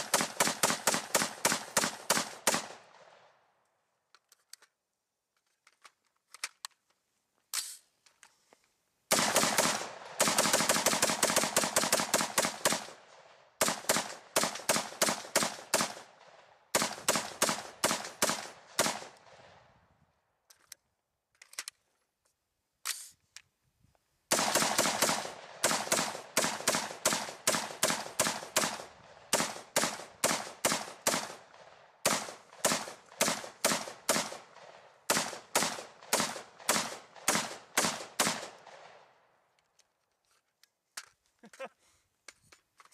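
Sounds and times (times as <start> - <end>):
rifle rapid gunshots: 0.0 - 3.0, 9.1 - 19.4, 24.3 - 39.0.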